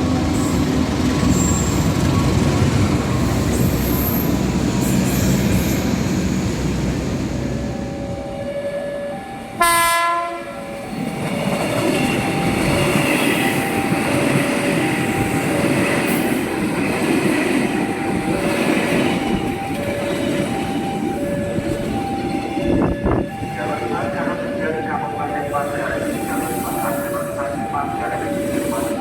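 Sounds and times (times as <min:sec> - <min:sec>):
train rumble and wheel clatter: 0:00.0 - 0:29.0
train horn blast: 0:09.6 - 0:10.6.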